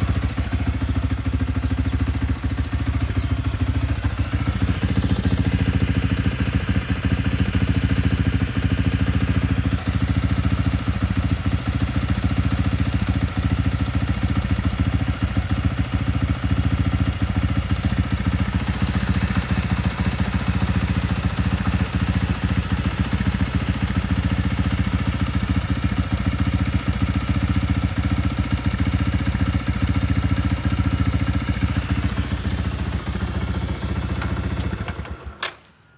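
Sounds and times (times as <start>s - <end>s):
motorcycle engine idling: 0.0s - 35.4s.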